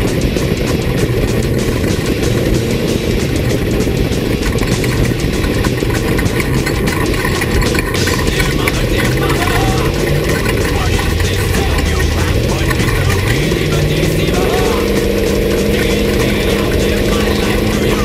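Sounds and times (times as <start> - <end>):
engine rumbling: 0.0 - 18.0.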